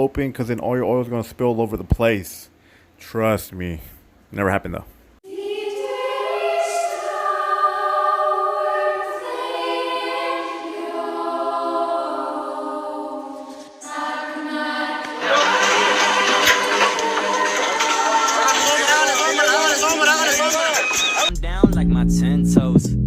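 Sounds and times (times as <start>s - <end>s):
choir singing held chords: 5.2s - 21.3s.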